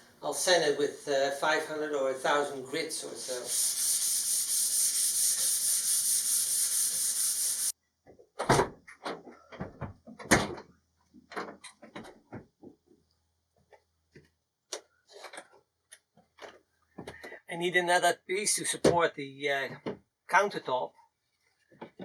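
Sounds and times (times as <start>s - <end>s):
sanding on wood: 2.2s - 7.8s
irregular knocks and clunks: 8.1s - 13.0s.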